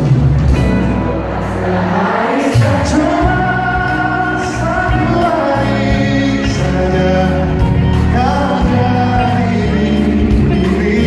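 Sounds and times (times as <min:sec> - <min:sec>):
live pop band playing: 0:00.0 - 0:11.0
man singing long notes: 0:02.6 - 0:11.0.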